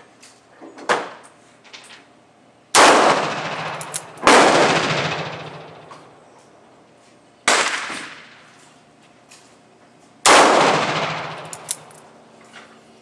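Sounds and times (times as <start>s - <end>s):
handgun shots with echo: 2.8s - 6.2s, 7.5s - 8.5s, 10.3s - 12.1s.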